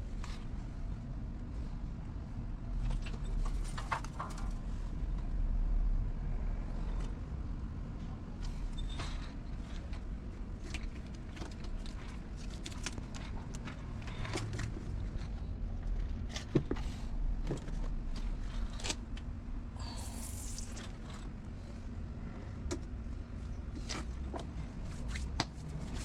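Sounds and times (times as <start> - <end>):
steady low rumble: 0.0 - 26.0
short hiss: 19.8 - 21.0.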